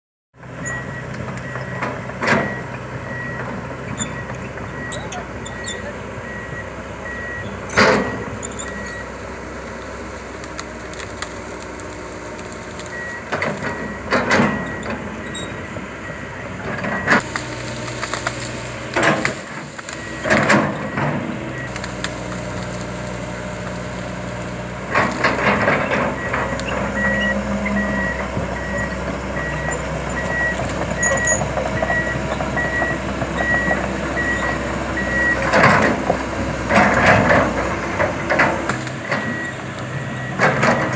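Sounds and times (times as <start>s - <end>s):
excavator diesel engine running: 0.4s - 40.9s
pulsed alarm beeps: 2.4s - 9.1s, 26.1s - 35.4s.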